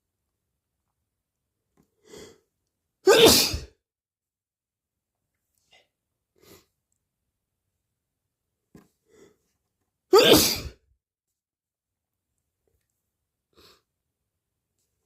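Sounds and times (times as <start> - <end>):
person sneezing: 3.0 - 3.8, 10.1 - 10.8.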